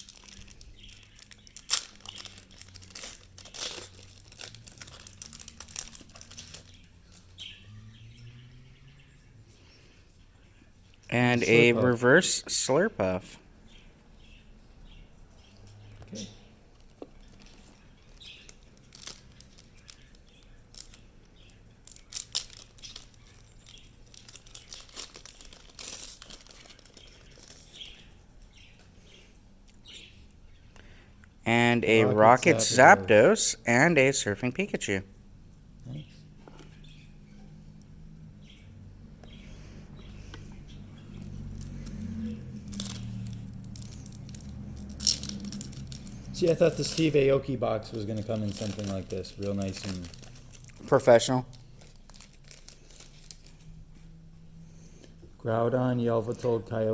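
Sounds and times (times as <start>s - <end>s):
foil wrapper crinkling: 0.0s - 7.4s, 17.0s - 28.0s, 42.6s - 53.8s
trading cards rustling: 0.0s - 7.4s, 21.8s - 27.9s, 31.5s - 35.0s, 41.1s - 47.3s, 47.9s - 53.7s.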